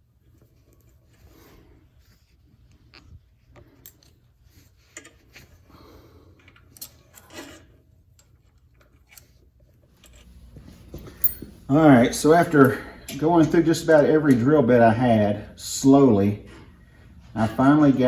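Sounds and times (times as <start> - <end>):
small hand tools clinking: 10.0 - 11.7.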